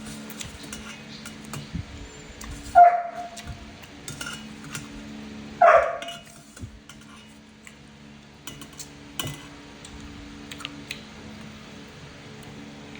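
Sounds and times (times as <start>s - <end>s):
low hum: 0.0s - 10.4s
dog barking: 2.7s - 3.4s, 5.6s - 6.2s
dishes clinking: 2.8s - 4.9s, 5.6s - 7.3s, 8.5s - 9.5s.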